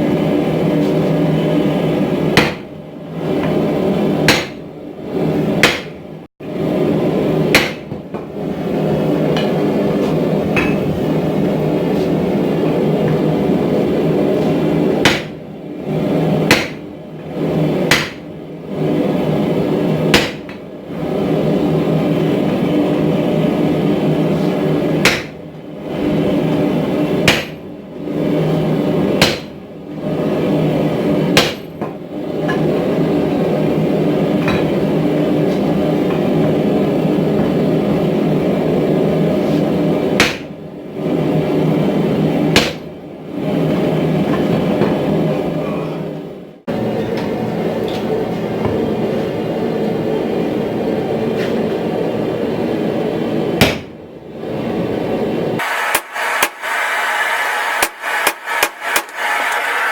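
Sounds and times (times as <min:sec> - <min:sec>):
hammer striking steel on anvil: 0:10.5 - 0:10.9
steady droning noise: 0:55.2 - 0:59.9.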